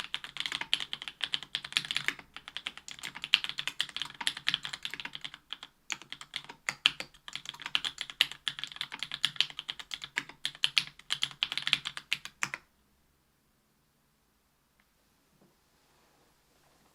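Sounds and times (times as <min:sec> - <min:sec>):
mechanical keyboard typing: 0:00.0 - 0:12.7.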